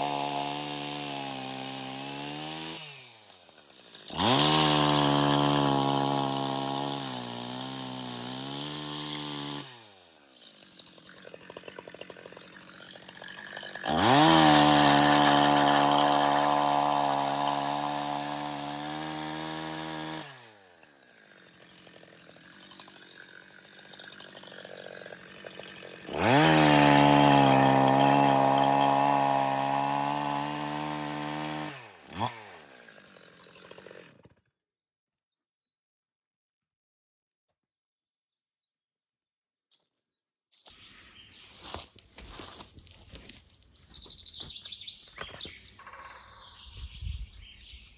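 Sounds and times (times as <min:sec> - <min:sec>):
chainsaw engine revving: 0:00.0 - 0:34.4.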